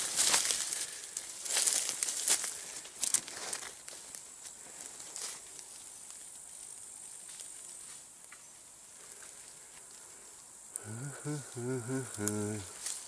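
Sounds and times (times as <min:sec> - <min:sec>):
rustling through undergrowth: 0:00.0 - 0:10.6, 0:11.3 - 0:13.0
high insect-like hiss: 0:00.0 - 0:13.0.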